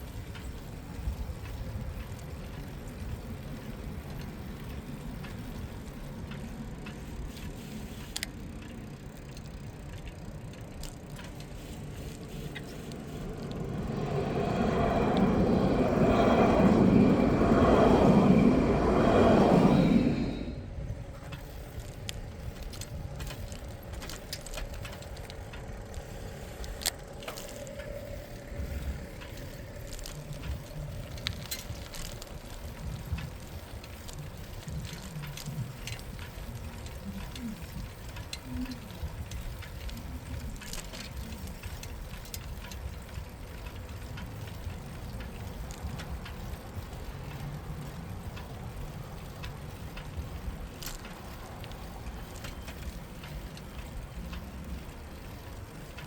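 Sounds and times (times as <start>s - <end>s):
bike clicks and rattles: 0.0s - 56.0s
tyre and wind rumble: 0.0s - 56.0s
passing vehicle: 1.6s - 37.6s.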